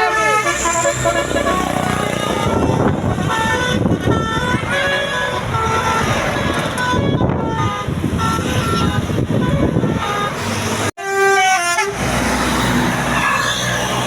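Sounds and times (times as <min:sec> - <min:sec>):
engine din: 0:00.0 - 0:10.9
bus horn playing a tune: 0:00.0 - 0:13.7.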